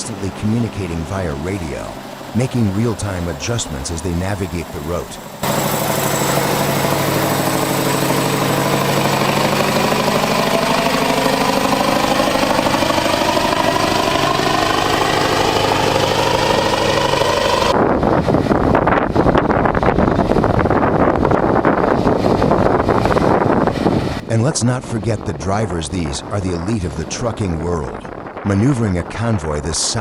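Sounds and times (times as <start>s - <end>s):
truck diesel engine running: 0.0s - 24.3s
wind buffeting microphone: 0.0s - 30.0s.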